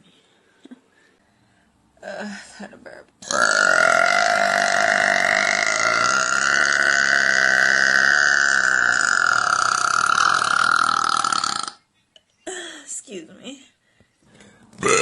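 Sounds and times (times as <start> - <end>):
woman burping: 3.2 - 11.8, 14.8 - 15.0.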